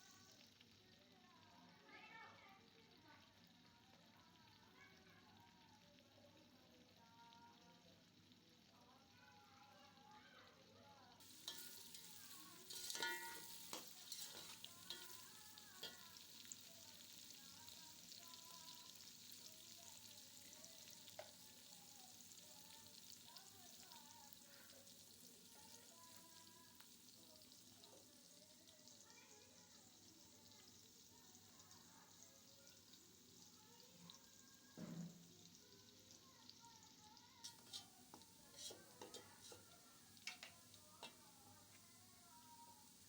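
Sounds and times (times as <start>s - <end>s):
food sizzling in hot oil: 0.0s - 43.0s
utensil clanking against pot: 11.3s - 16.2s, 37.4s - 41.2s.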